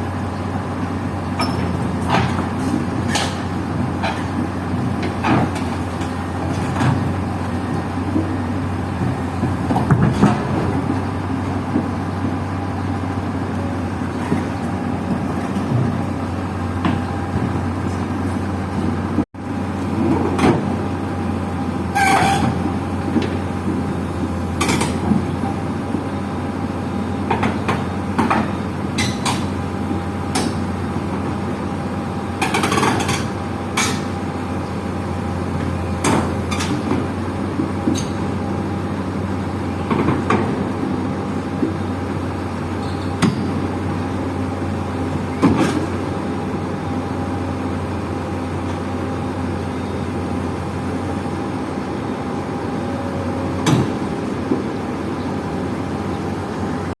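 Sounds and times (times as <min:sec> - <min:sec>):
diesel machinery droning: 0:00.0 - 0:57.0.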